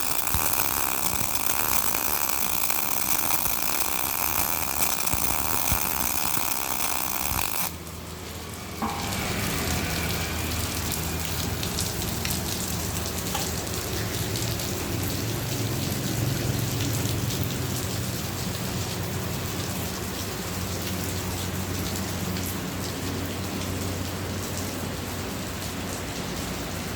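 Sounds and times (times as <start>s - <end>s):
welder arc crackling: 0.0s - 7.9s
welding machine hum: 0.0s - 8.0s.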